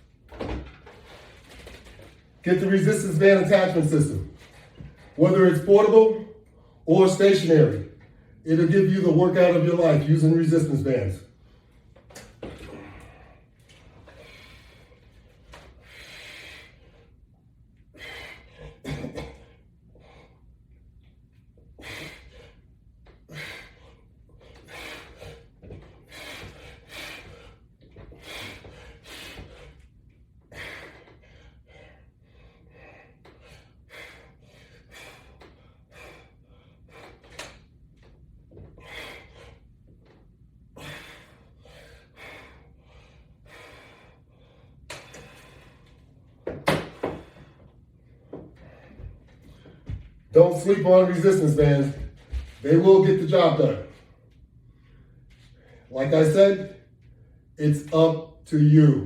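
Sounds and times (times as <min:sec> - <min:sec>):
man breathing hard: 0:11.3 - 0:20.8, 0:21.6 - 0:37.7, 0:38.5 - 0:52.2.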